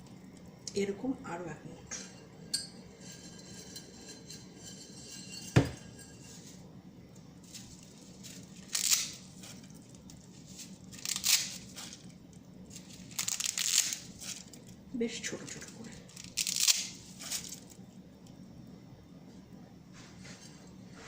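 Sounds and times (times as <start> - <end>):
dry noodles snapping: 8.6 - 10.1, 10.9 - 12.1.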